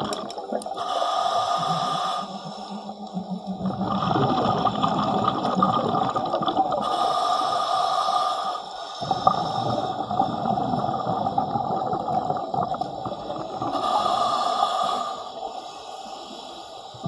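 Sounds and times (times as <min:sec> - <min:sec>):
bubbles gurgling underwater: 0:00.0 - 0:00.8, 0:03.0 - 0:06.9, 0:09.0 - 0:13.8
steady breathing hiss: 0:00.7 - 0:03.4, 0:06.8 - 0:10.6, 0:13.3 - 0:17.0.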